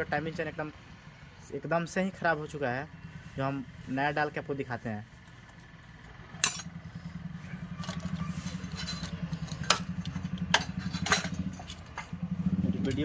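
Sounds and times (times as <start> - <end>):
small engine idling: 0.0 - 13.0
metallic clinks of tools on metal: 6.4 - 6.7, 7.8 - 12.2.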